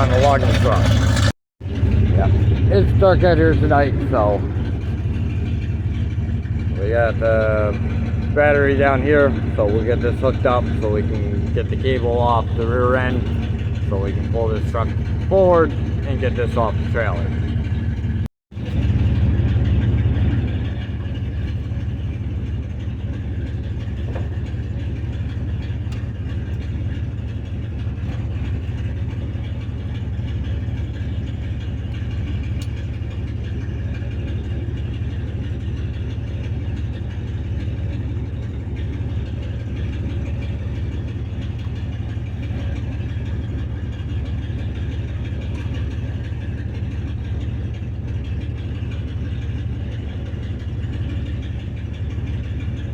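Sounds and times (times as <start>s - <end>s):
vehicle engine idling: 0.0s - 52.9s.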